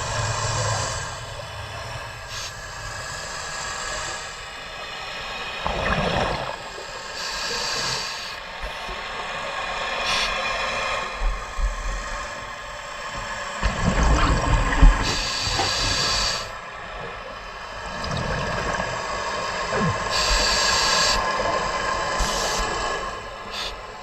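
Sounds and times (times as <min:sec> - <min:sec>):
exhaled bubbles underwater: 0:05.6 - 0:07.0, 0:13.6 - 0:23.6
hissing inhalation through regulator: 0:05.9 - 0:09.0, 0:10.0 - 0:11.0, 0:14.4 - 0:16.7, 0:18.7 - 0:24.0.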